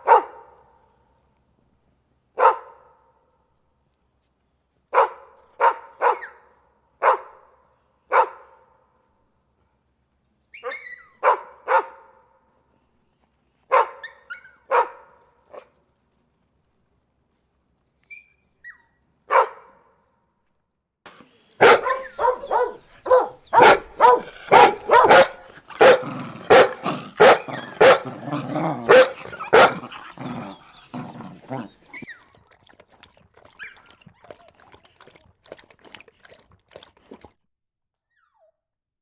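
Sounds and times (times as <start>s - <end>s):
dog barking: 0.0s - 0.5s, 2.4s - 3.0s, 4.9s - 6.4s, 7.0s - 7.4s, 8.1s - 8.6s, 10.6s - 12.1s, 13.7s - 15.7s, 19.3s - 19.9s, 21.6s - 32.2s.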